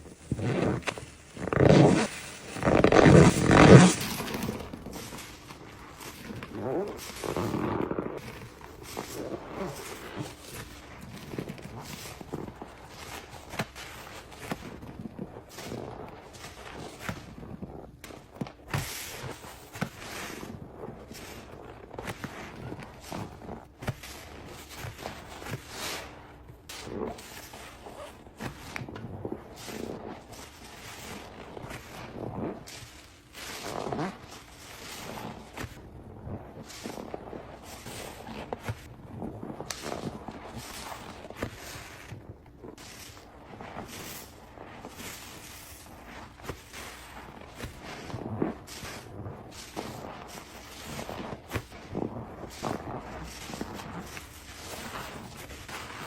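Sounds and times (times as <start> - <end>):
wet sponge squeaking and squelching: 0.0 - 17.8, 18.8 - 56.0
sponge squeak: 0.1 - 5.2.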